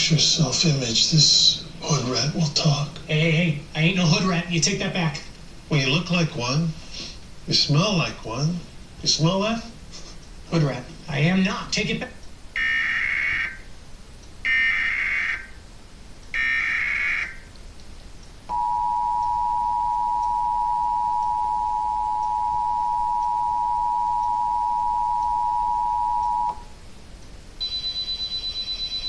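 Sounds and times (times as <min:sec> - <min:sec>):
two-tone attention signal: 0:18.5 - 0:26.7.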